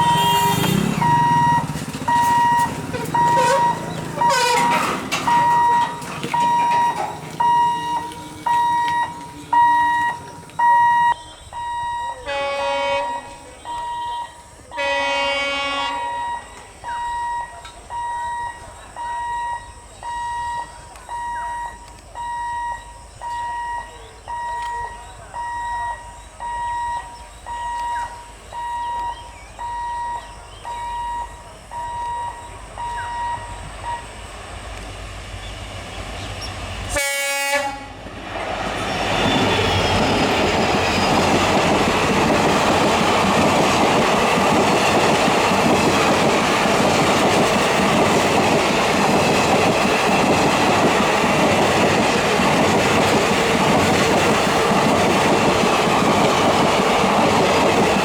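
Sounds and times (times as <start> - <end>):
train wheels clattering over rails: 0.0 - 12.0, 27.4 - 58.0
locomotive horn blast: 0.0 - 16.7, 36.9 - 38.2
level crossing warning beeper: 0.0 - 34.4, 38.8 - 58.0.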